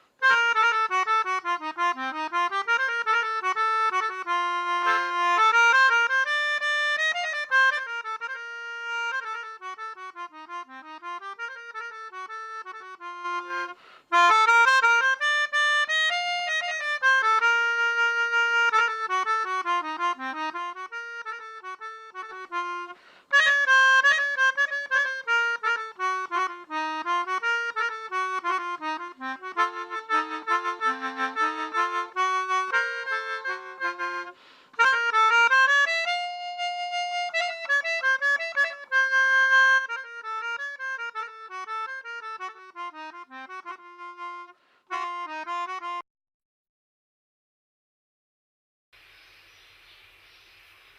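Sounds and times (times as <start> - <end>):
free-reed instrument melody: 0.0 - 46.0.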